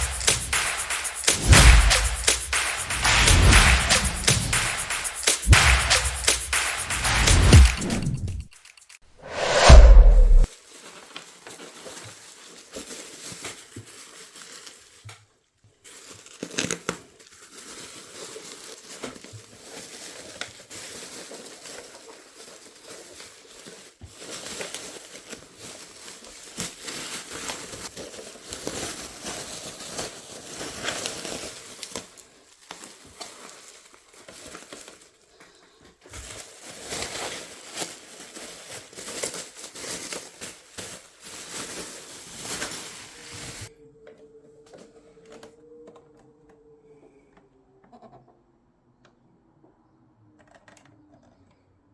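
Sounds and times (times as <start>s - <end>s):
packing material crumpling and tearing: 10.4s - 43.7s.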